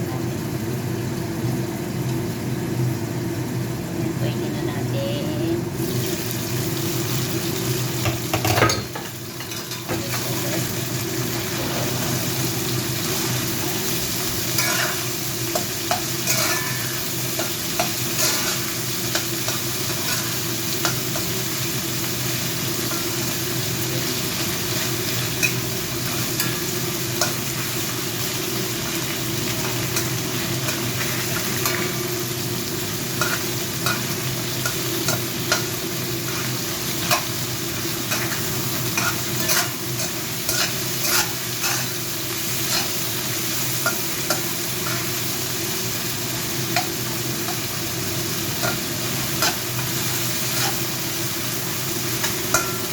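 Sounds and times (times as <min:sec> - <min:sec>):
chicken frying in hot oil: 0:00.0 - 0:52.9
utensil scraping a pan: 0:39.0 - 0:42.0.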